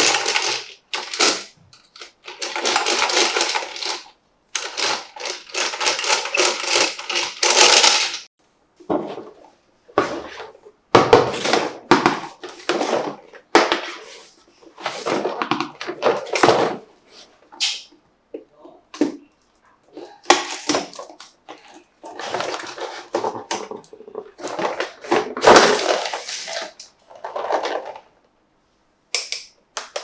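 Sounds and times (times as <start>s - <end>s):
packaging rustling: 20.2s - 28.1s.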